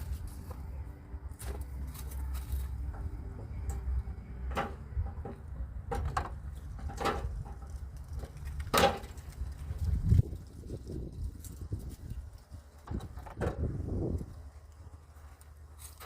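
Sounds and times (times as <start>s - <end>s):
low steady rumble: 0.0s - 16.0s
sharp knocks and clanks: 4.4s - 7.7s.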